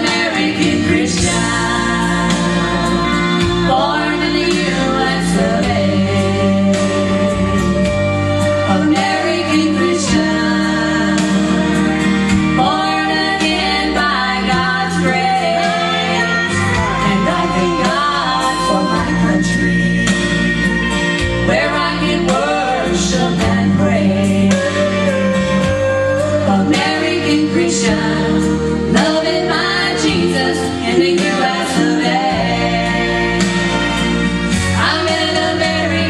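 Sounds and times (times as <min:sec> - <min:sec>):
person singing gospel song: 0:00.0 - 0:07.7, 0:08.6 - 0:20.4, 0:21.4 - 0:34.0, 0:34.6 - 0:36.0
instrumental accompaniment: 0:00.0 - 0:36.0.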